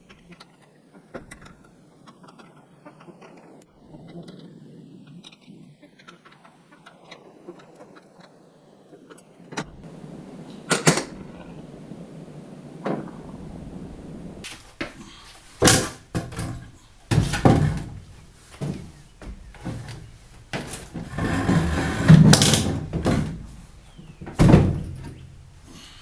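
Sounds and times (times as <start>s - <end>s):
rough scraping: 14.2s - 26.0s
knocks and thuds on wooden rack: 15.6s - 25.4s.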